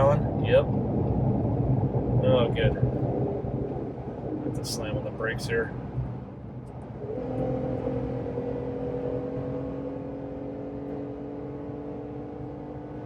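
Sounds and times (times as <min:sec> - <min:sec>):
tyre and wind noise: 0:00.0 - 0:08.8
car engine drone: 0:00.0 - 0:13.0.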